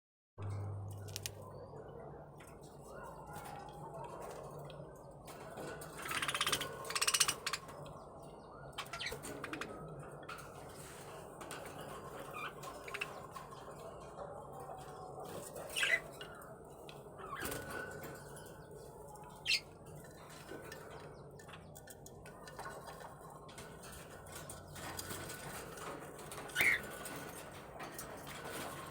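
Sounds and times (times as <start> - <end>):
parrots chirping: 26.6 - 26.8.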